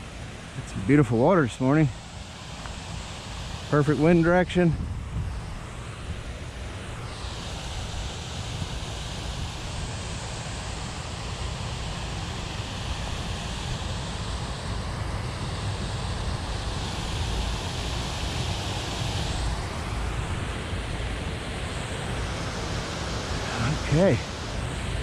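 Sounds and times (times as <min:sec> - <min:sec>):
high-pitched boat motor hiss: 0:00.0 - 0:25.0
wind buffeting microphone: 0:03.8 - 0:06.4.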